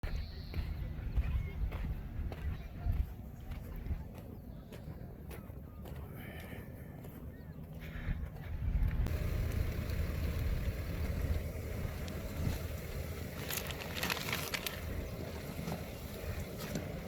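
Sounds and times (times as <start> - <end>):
wind rumbling on microphone: 7.7 - 17.0.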